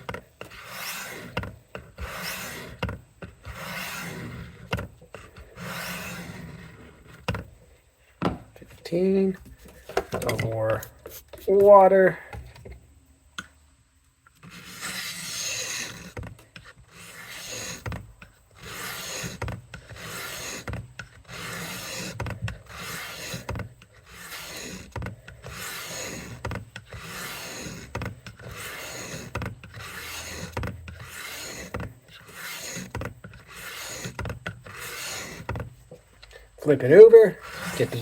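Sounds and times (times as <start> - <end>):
knife rasping on sharpening stone: 18.6 - 20.6, 21.3 - 35.5.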